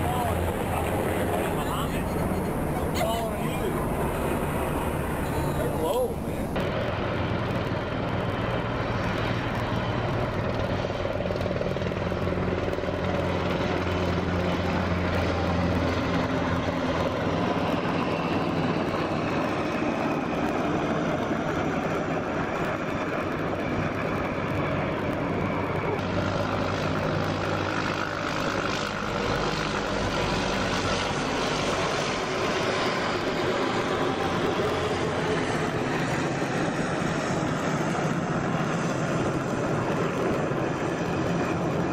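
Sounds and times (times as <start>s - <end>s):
helicopters flying overhead: 0.0s - 41.9s.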